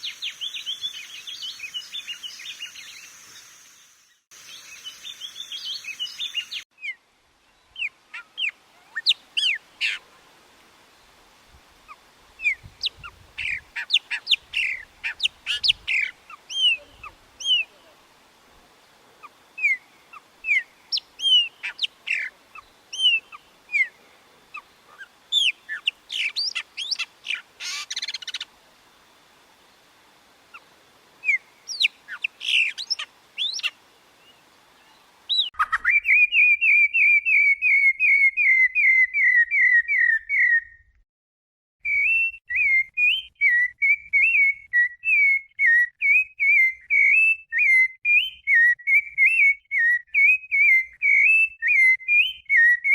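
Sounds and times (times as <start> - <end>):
songbirds chirping: 0.0 - 10.0, 12.6 - 37.4
faint hiss: 0.0 - 35.5.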